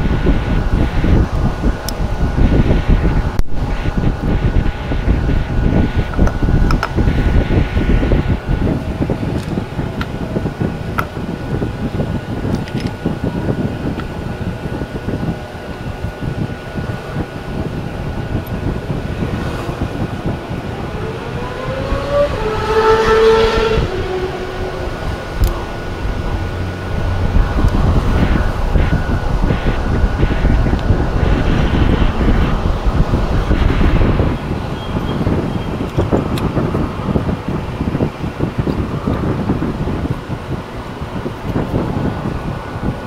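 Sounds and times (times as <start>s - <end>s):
vehicle rumble: 0.0s - 43.0s
wind buffeting microphone: 0.0s - 43.0s
rising pitched tone: 18.0s - 36.2s.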